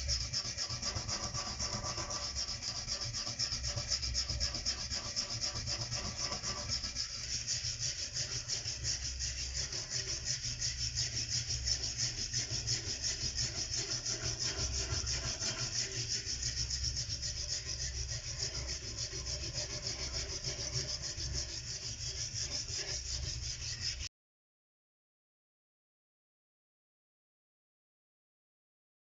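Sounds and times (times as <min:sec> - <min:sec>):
abrasive rubbing of a chisel: 0:00.0 - 0:24.1.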